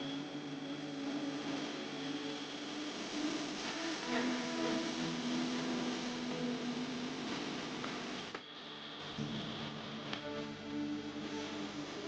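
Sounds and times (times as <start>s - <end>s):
soft held music notes: 0.0s - 12.0s.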